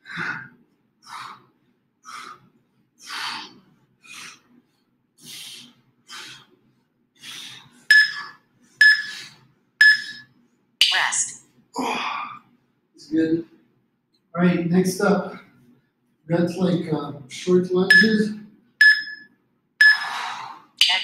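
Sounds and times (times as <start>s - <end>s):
man breathing hard: 0.0s - 6.6s, 7.2s - 8.4s, 19.9s - 20.8s
whistling breaths: 7.2s - 10.3s, 19.8s - 20.4s.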